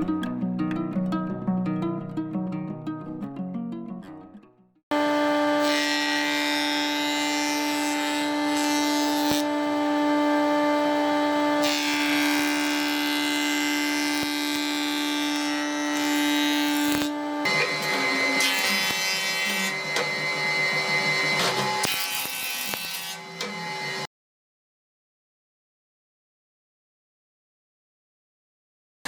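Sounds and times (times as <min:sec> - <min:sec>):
power tool whining: 0:04.9 - 0:24.1.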